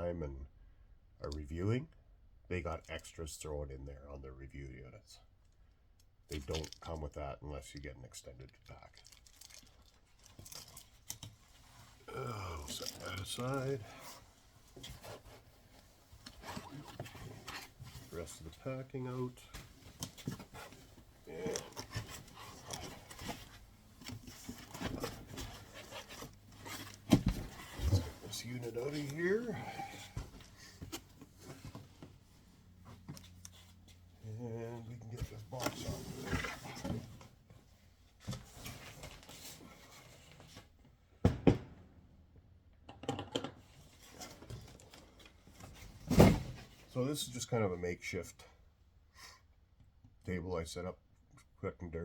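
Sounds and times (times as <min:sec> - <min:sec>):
cardboard packaging rustling: 0:08.9 - 0:11.4.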